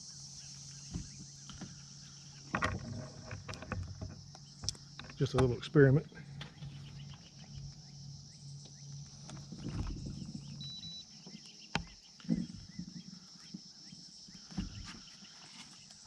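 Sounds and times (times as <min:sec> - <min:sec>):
low hum: 0:00.0 - 0:15.0
crickets and insects chirping: 0:00.0 - 0:16.0
knock of gear: 0:00.9 - 0:01.7.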